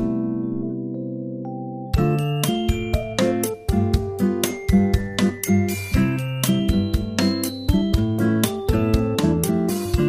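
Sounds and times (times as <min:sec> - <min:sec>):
keyboard and mallet melody: 0:00.0 - 0:10.0
percussive beat: 0:02.0 - 0:10.0.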